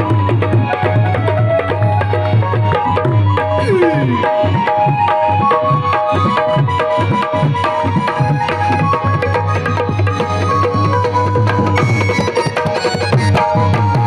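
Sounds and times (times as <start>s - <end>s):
sustained melodic notes: 0.0s - 6.0s
tabla playing: 0.0s - 14.0s.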